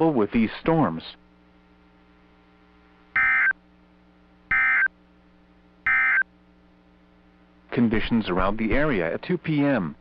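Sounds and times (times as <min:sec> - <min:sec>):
faint steady hum: 0:00.0 - 0:10.0
buzzy warbling data bursts: 0:05.9 - 0:06.2.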